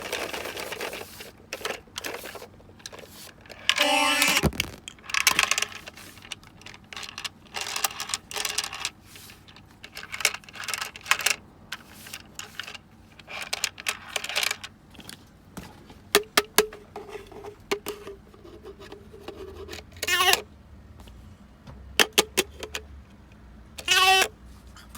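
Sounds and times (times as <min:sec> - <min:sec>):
toy pieces clattering and clicking: 0:00.0 - 0:14.7
electronic toy sound effect: 0:03.8 - 0:04.8.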